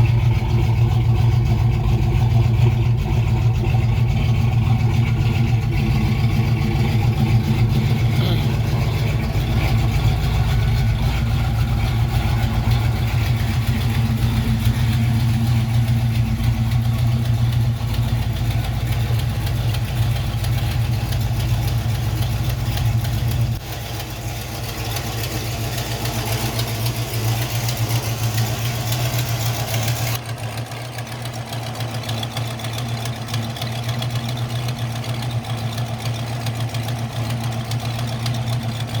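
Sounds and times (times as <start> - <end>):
vehicle engine idling with exhaust leak: 0.0 - 39.0.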